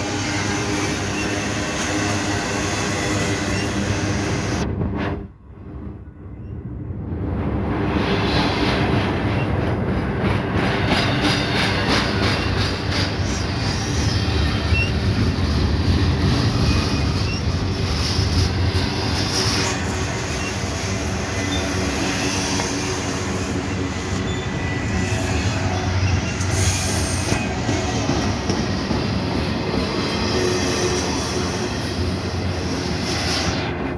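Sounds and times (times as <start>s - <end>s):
high-pitched wheel squeals: 0.0s - 4.5s, 13.3s - 15.2s, 16.3s - 28.0s
train wheels rumbling on rails: 0.0s - 33.9s.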